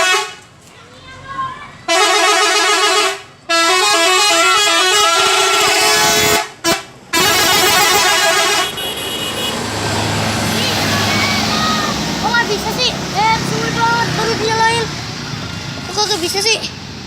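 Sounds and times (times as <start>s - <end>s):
multi-tone air horn tune: 0.0s - 0.4s, 1.9s - 9.6s.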